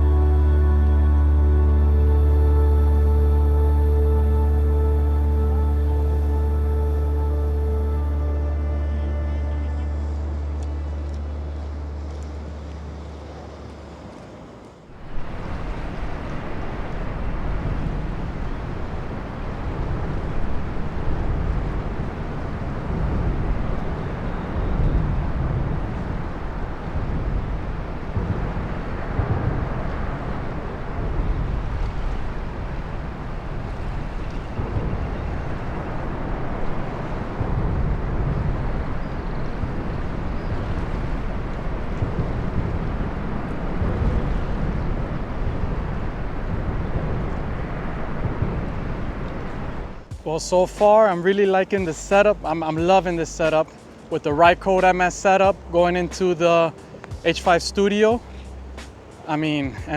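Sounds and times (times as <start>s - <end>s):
traffic rumble overhead: 0.0s - 59.9s
water washing: 14.9s - 59.9s.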